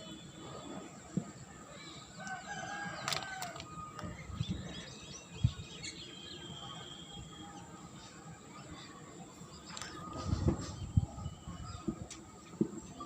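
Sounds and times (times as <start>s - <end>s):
short whistled calls: 5.8s - 7.7s.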